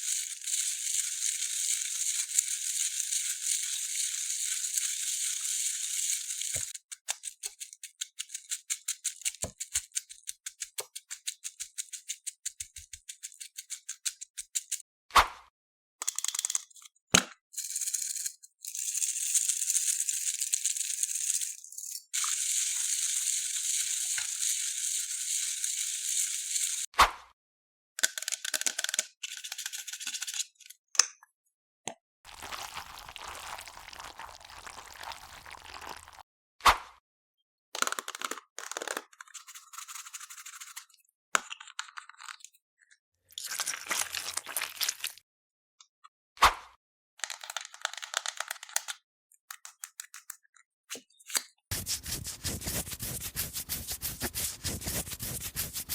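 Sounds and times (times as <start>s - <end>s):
crunchy slime crackling: 32.3s - 36.2s.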